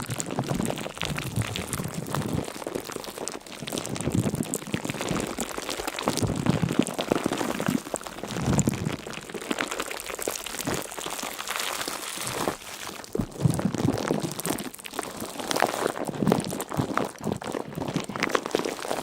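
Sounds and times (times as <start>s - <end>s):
dense crackling and crunching: 0.0s - 19.0s.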